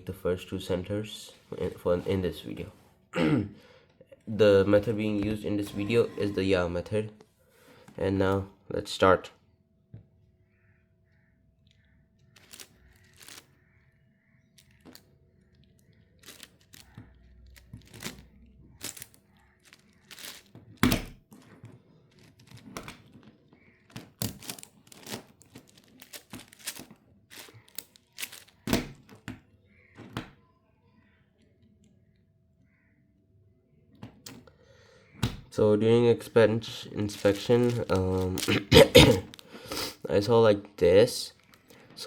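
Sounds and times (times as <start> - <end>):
puzzle cube clicking: 12.4 - 13.4.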